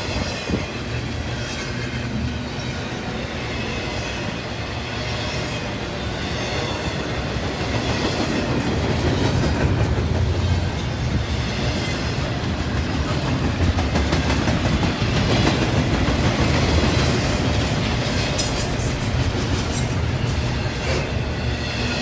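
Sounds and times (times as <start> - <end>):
freight train cars rumbling past: 0.0 - 22.0
wheels clacking over rail joints: 5.5 - 22.0.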